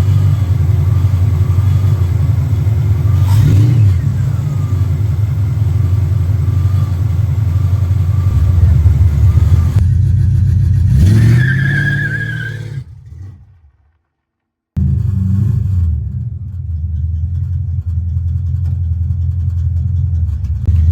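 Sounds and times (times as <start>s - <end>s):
car engine running and revving: 0.0s - 13.7s, 14.8s - 20.9s
high whine: 8.2s - 12.8s.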